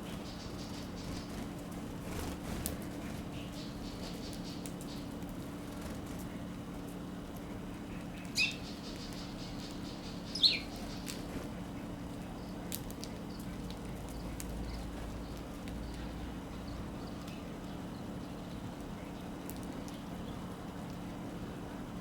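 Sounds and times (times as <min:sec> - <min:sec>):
steady low hum: 0:00.0 - 0:22.0
sparrow chirps: 0:00.1 - 0:01.4, 0:03.3 - 0:05.1, 0:07.9 - 0:11.3, 0:12.3 - 0:20.5.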